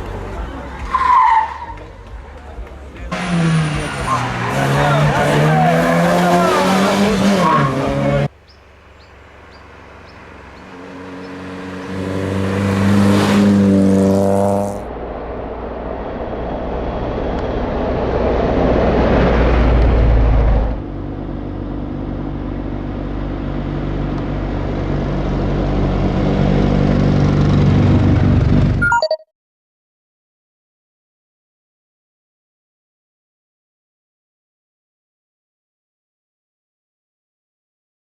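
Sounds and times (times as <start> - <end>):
rally car engines accelerating: 0.0 - 8.3, 9.0 - 21.5.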